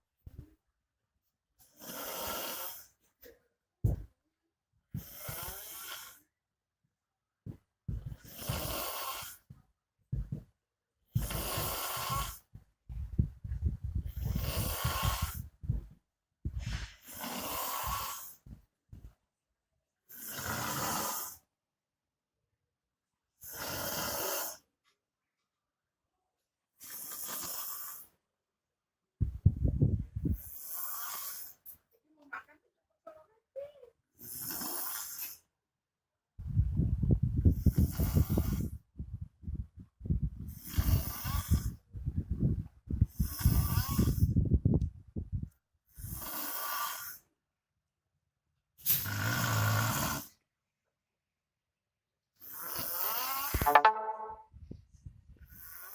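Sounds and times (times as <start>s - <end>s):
man snoring loudly: 5.0s - 6.2s, 8.2s - 9.4s, 14.2s - 15.4s, 20.1s - 21.4s, 23.4s - 24.6s, 46.1s - 47.1s, 48.9s - 50.3s, 52.4s - 53.5s.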